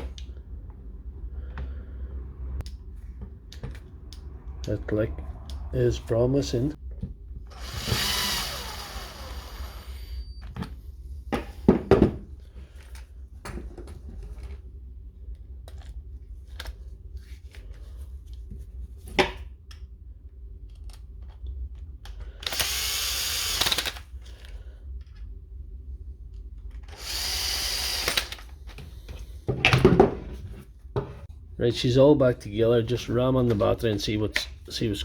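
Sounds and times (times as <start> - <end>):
small electric motor running: 7.6 - 10.3, 22.5 - 24.0, 27.0 - 28.4.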